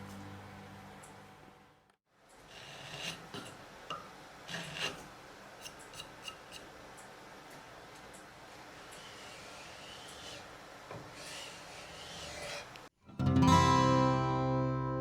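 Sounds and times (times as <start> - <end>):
hand tool scraping: 2.4 - 3.6, 4.5 - 6.7, 8.8 - 12.9.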